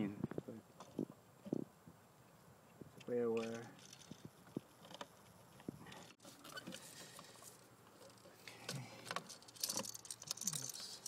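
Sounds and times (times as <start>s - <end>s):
small scrapes of wiring: 3.4s - 11.0s.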